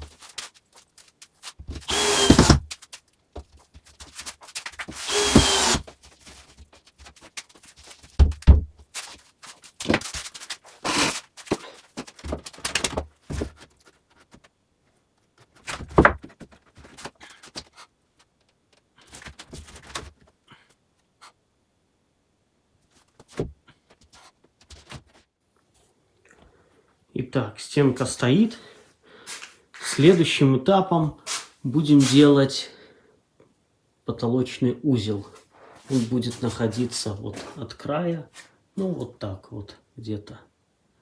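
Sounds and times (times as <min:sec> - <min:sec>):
knocks and thumps of wood: 0:01.6 - 0:03.9, 0:08.0 - 0:08.9, 0:15.6 - 0:17.7
power drill running: 0:01.8 - 0:02.6, 0:05.0 - 0:05.8.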